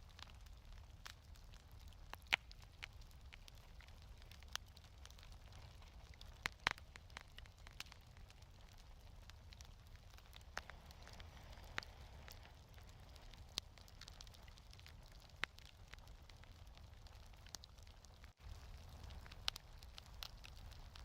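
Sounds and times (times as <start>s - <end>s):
wood fire crackling: 0.0s - 21.0s
sharp fire pops: 9.3s - 21.0s.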